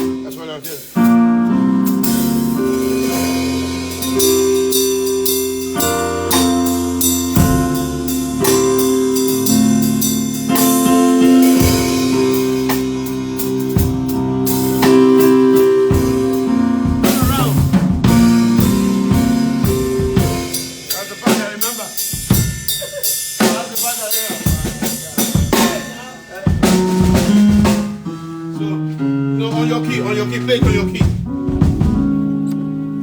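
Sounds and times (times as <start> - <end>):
steady drum hits: 0.0 - 28.1, 30.6 - 32.3
held keyboard chords: 0.0 - 33.0.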